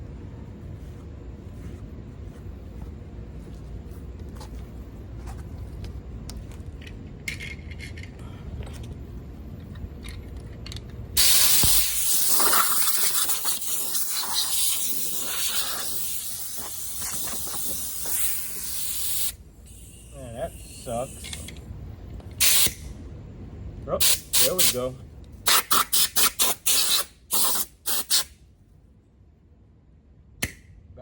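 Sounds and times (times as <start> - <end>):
low steady rumble: 0.0 - 11.2, 19.3 - 25.5
compressed air hissing: 11.2 - 21.6, 22.4 - 22.9, 24.0 - 28.3.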